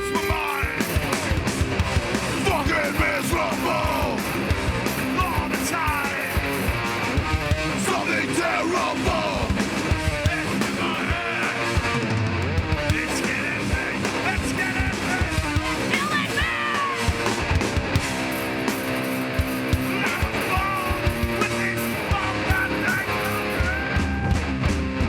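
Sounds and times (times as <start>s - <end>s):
distorted electric guitars: 0.0s - 25.0s
pounding drums: 0.0s - 25.0s
shouted vocals: 2.4s - 6.4s, 7.7s - 9.6s, 10.2s - 12.0s, 13.0s - 17.3s, 19.8s - 24.6s.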